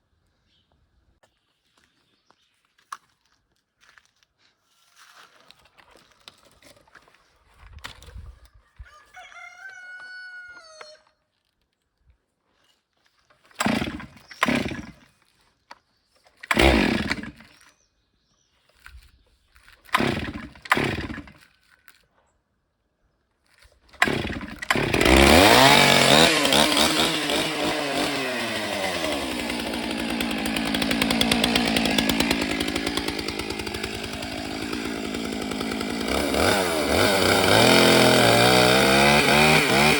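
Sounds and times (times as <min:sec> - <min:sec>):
rooster crowing: 0:08.6 - 0:11.2
chainsaw cutting log: 0:13.5 - 0:15.1, 0:16.4 - 0:17.6, 0:19.8 - 0:21.5, 0:24.0 - 0:39.9
chainsaw starting and revving: 0:13.5 - 0:15.1, 0:16.4 - 0:17.6, 0:19.9 - 0:21.5, 0:24.0 - 0:39.9.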